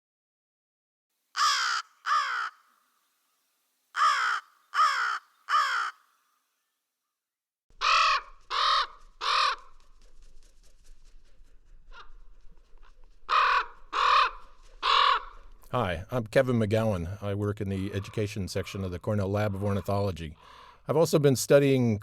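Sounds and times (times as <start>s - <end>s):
crow cawing: 1.3s - 2.8s, 3.9s - 6.2s, 7.7s - 9.9s, 11.9s - 15.7s, 19.4s - 20.8s.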